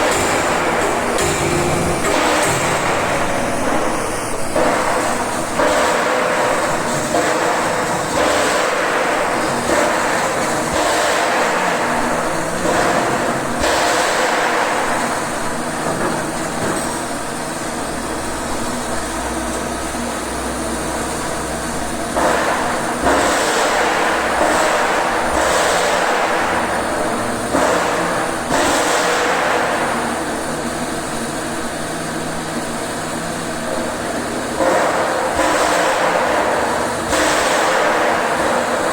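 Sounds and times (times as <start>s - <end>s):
welding arc hissing: 0.0s - 6.1s.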